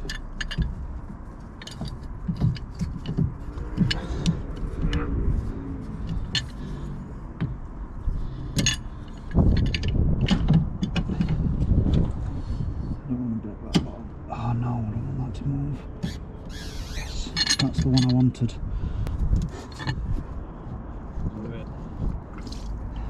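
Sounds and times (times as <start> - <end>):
metal tools clinking and knocking: 0.0 - 7.1, 8.2 - 11.6, 16.7 - 18.5, 19.5 - 20.1.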